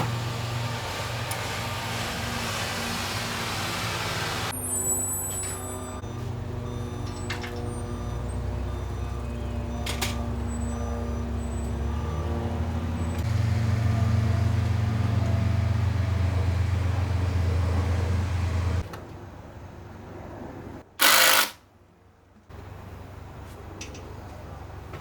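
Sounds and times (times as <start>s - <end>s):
vehicle engine running: 0.0s - 4.8s, 5.6s - 18.8s.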